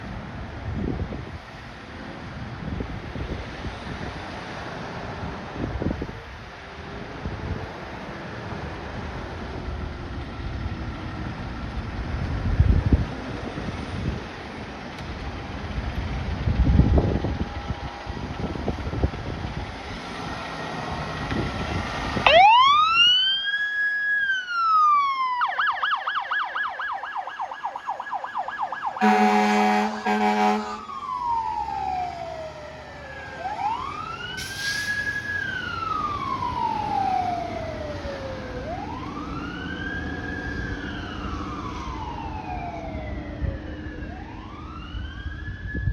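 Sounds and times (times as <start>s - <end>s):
engine and road noise: 0.0s - 45.9s
fire engine siren wailing: 11.0s - 45.9s
air horn blast: 29.0s - 31.0s.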